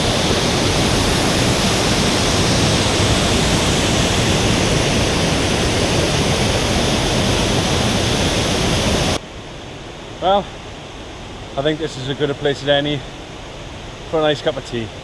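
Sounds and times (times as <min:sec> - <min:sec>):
waterfall rushing: 0:00.0 - 0:09.2.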